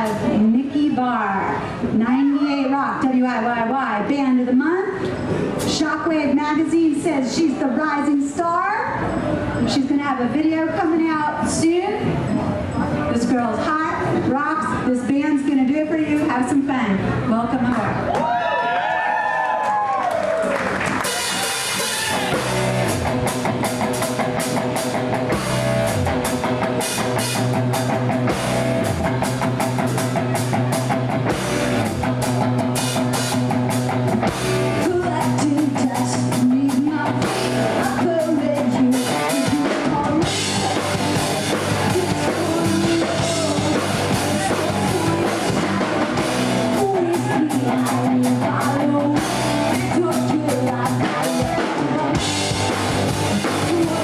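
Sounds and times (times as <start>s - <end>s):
electric guitar: 19.7s - 54.0s
drum kit: 20.6s - 54.0s
person singing: 34.8s - 52.5s, 53.4s - 54.0s.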